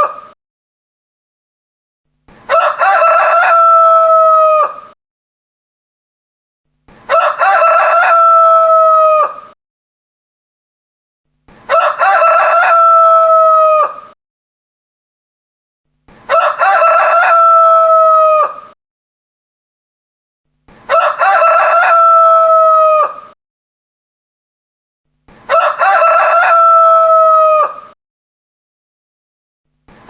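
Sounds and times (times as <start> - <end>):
rooster crowing: 2.5 - 5.0, 7.1 - 9.6, 11.7 - 14.2, 16.3 - 18.8, 20.9 - 23.4, 25.5 - 28.0.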